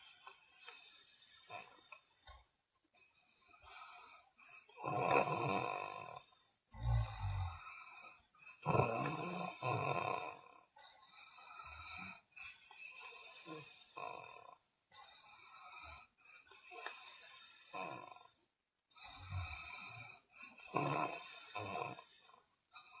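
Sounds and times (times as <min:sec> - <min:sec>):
person snoring: 0:00.0 - 0:02.4, 0:03.4 - 0:18.4, 0:19.0 - 0:23.0.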